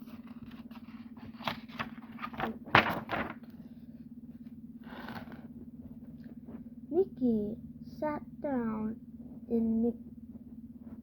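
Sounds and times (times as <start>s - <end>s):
paper rustling and clicking: 0.0s - 3.6s
steady low hum: 0.0s - 11.0s.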